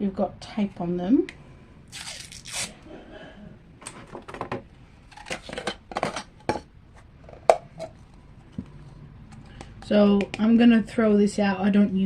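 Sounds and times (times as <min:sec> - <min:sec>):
tape peeling: 0:01.9 - 0:02.8
plastic containers rustling and clicking: 0:03.8 - 0:10.4.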